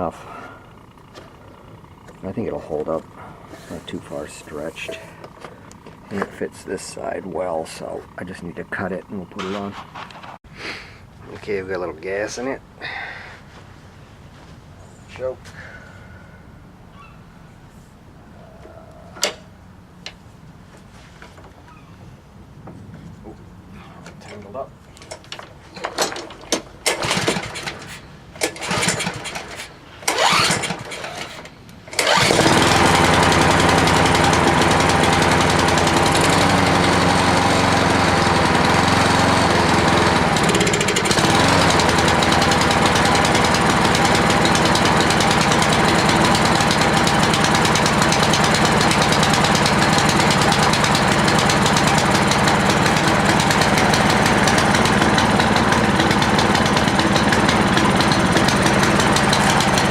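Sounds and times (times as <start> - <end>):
lawn mower engine running: 0.0 - 9.7, 25.0 - 59.9
recoil starter cord tugs: 24.1 - 59.9.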